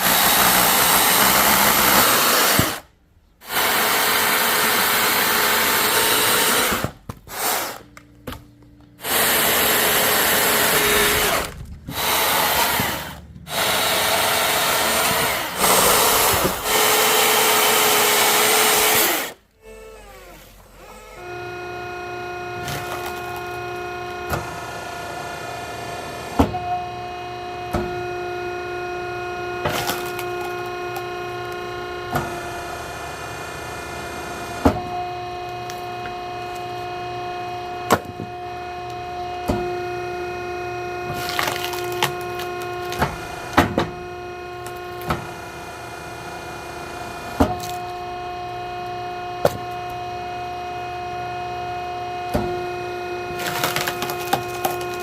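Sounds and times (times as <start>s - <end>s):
engine drone: 0.0s - 55.0s
logs knocking together: 53.3s - 55.0s.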